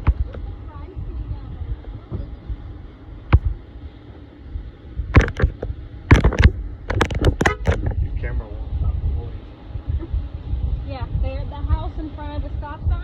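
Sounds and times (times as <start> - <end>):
sharp clicks and knocks: 0.0 - 0.5, 5.1 - 8.0
steady low rumble: 0.0 - 13.0.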